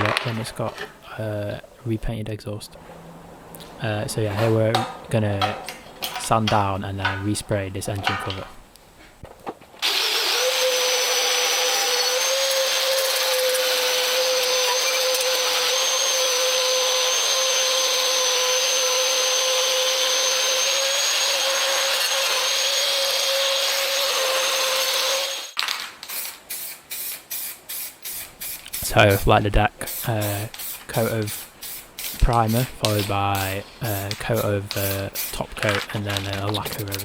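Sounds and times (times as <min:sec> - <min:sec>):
electric power sander whining: 0:09.8 - 0:25.6
short bursts: 0:25.2 - 0:37.0.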